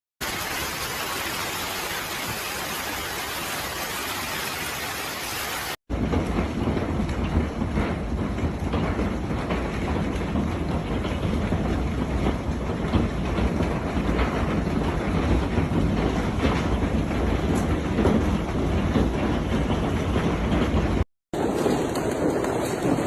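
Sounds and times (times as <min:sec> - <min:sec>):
heavy rain hiss: 0:00.2 - 0:05.8
hailstones striking: 0:00.2 - 0:23.0.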